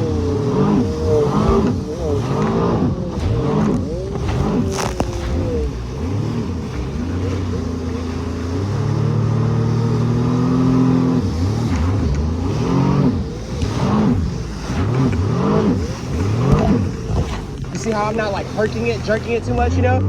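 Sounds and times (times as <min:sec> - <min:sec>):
jet ski engine running: 0:00.0 - 0:20.0.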